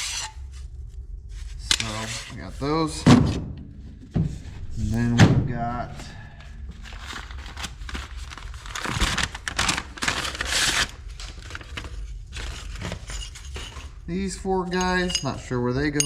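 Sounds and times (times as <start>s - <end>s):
packaging crinkling and tearing: 6.4s - 14.0s.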